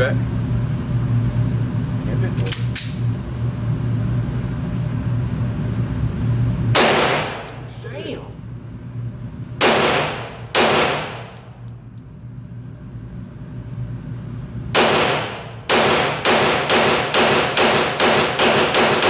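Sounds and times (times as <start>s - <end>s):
gunshots: 6.8s - 7.5s, 9.6s - 11.4s, 14.8s - 19.0s.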